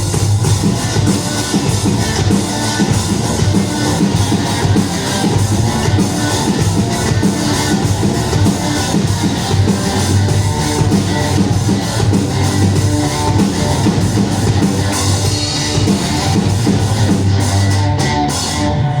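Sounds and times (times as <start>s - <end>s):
rock band playing live: 0.0s - 19.0s.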